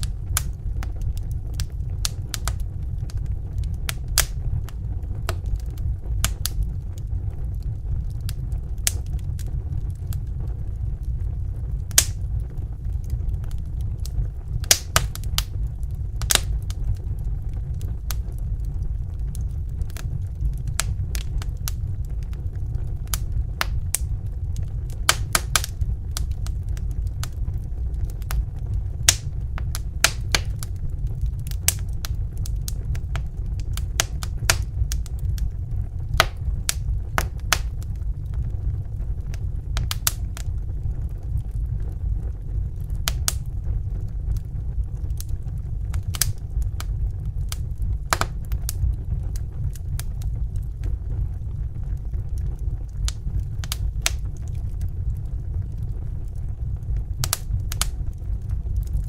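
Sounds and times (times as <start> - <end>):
wood fire crackling: 0.0 - 59.0
sharp pops and snaps: 3.9 - 4.4, 11.8 - 12.2, 14.6 - 15.5, 16.2 - 17.0, 25.1 - 26.4, 29.0 - 30.7, 31.5 - 35.5, 36.2 - 37.8, 39.8 - 40.4, 42.8 - 43.4, 45.9 - 46.4, 47.5 - 48.8, 53.1 - 54.5, 57.2 - 58.0.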